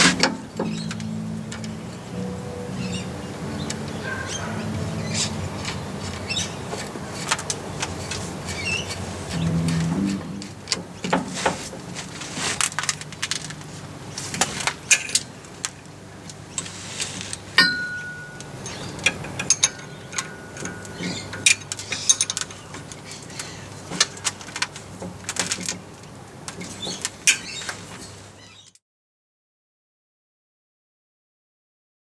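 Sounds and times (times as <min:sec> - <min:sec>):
low steady hum: 0:08.2 - 0:10.9
hand tools clinking on metal: 0:16.6 - 0:25.7
metallic ping: 0:17.6 - 0:21.6.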